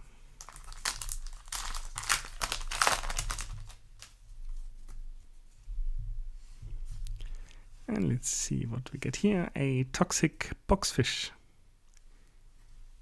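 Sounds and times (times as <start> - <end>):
foil wrapper tearing and crinkling: 0.4 - 4.2.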